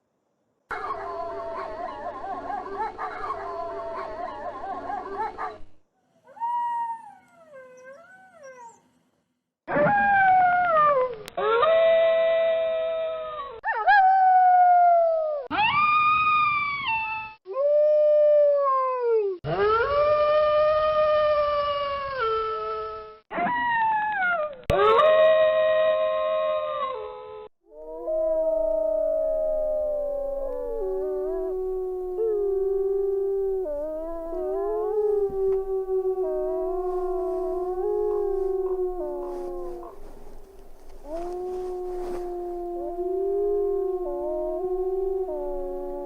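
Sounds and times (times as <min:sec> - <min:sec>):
wolves howling: 0:00.7 - 0:05.7, 0:27.7 - 0:46.0.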